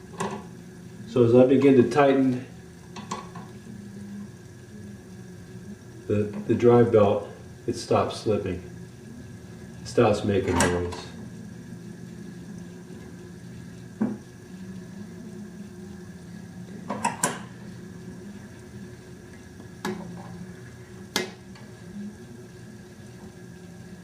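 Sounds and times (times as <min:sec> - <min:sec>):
potter's wheel humming: 0:00.0 - 0:24.0.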